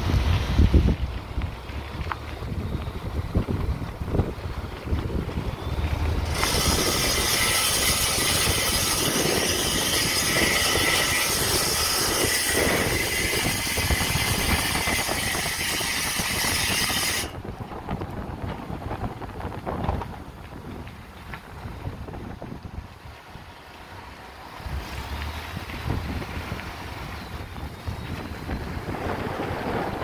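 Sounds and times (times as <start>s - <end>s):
engine running rumble: 0.0s - 9.6s, 17.3s - 30.0s
engine screeching: 1.7s - 17.4s.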